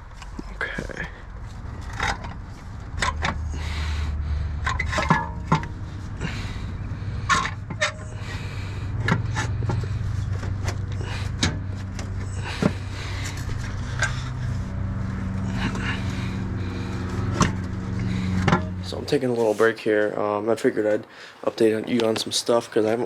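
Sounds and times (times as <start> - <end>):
steady low rumble: 0.0 - 21.1
metal knocks and clanks: 4.6 - 6.0, 7.2 - 8.4, 17.1 - 18.9.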